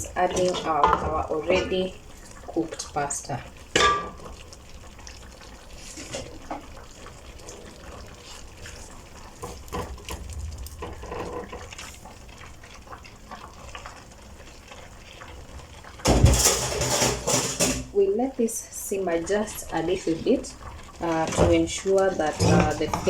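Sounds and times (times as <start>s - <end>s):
wet stirring of pasta in sauce: 4.2s - 15.8s.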